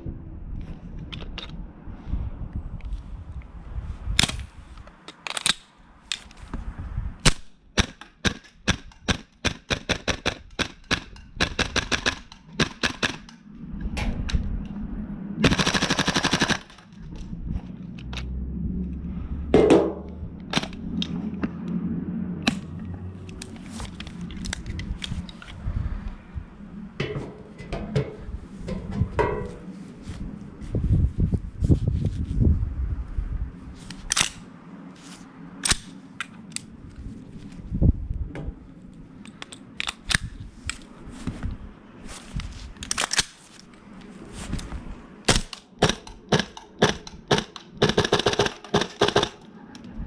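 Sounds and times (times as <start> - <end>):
airsoft rifle shots: 7.2 - 13.3, 15.4 - 16.8, 45.3 - 49.5.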